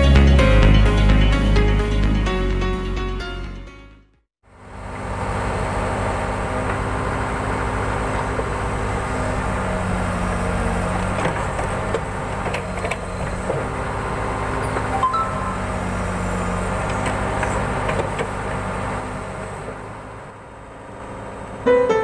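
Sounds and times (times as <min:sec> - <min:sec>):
diesel engine running: 0:04.4 - 0:22.0.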